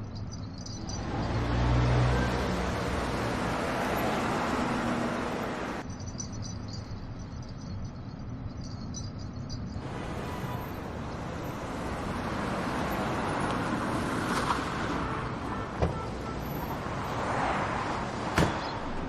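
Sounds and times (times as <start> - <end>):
car engine and tyre noise: 0.0 - 19.0.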